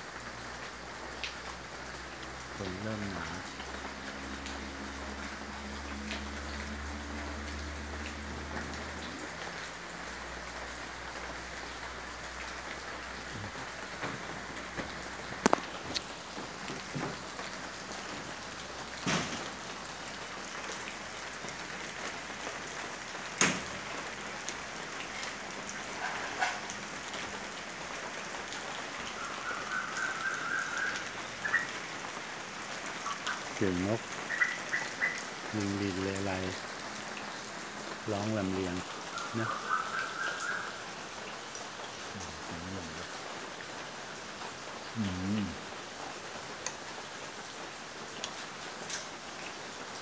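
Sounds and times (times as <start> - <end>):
rain falling on surfaces: 0.0 - 50.0
bird chirping: 34.3 - 35.2.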